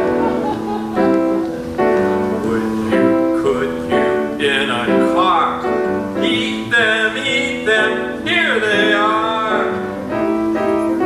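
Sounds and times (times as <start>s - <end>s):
piano accompaniment: 0.0s - 11.0s
men singing: 2.3s - 5.6s, 6.2s - 10.0s.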